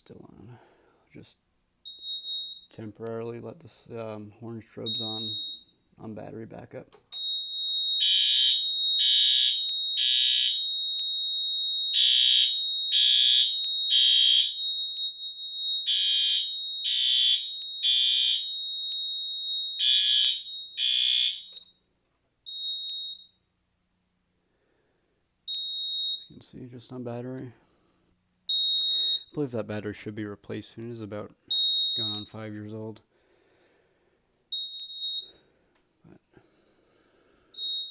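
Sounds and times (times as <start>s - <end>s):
fire alarm horn blasts: 7.2s - 21.7s, 28.5s - 29.4s, 31.5s - 32.4s
steady high-pitched alarm tone: 7.2s - 21.7s, 37.6s - 37.9s.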